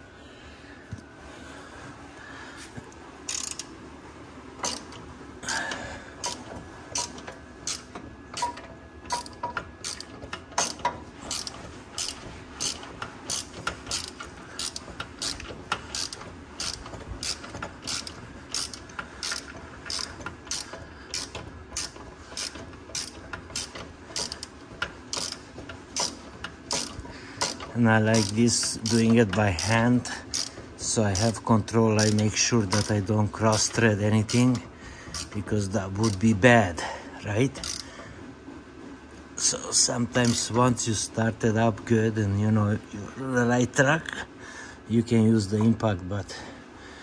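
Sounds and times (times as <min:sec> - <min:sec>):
ratchet wrench clicking: 0:03.3 - 0:03.7, 0:04.6 - 0:05.0, 0:06.2 - 0:25.4, 0:26.0 - 0:31.4, 0:32.0 - 0:35.4, 0:36.0 - 0:36.2, 0:37.6 - 0:37.9, 0:40.2 - 0:40.5.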